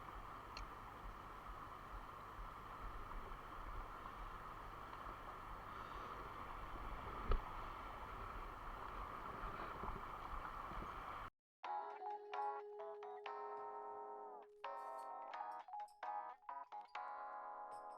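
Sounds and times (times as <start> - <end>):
stream water rushing: 0.0 - 11.3.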